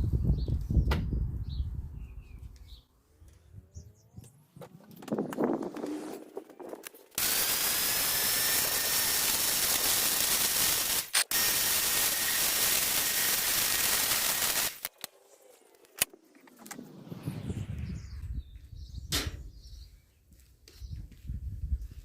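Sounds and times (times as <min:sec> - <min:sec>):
high-pressure spray hissing: 0:07.2 - 0:14.8.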